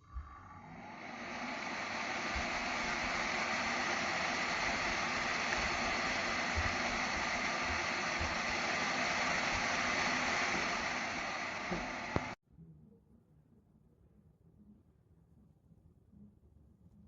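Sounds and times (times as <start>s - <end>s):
fan blowing air: 0.4s - 12.4s.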